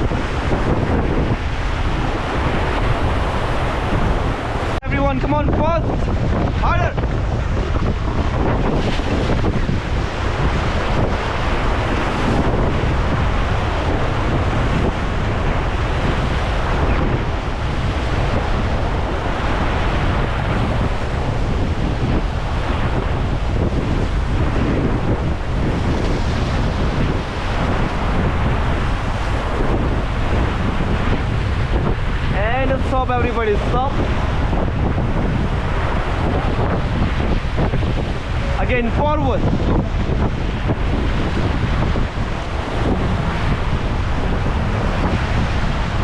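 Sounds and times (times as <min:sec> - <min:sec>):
wind buffeting microphone: 0:00.0 - 0:46.0
river rapids rushing: 0:32.4 - 0:46.0.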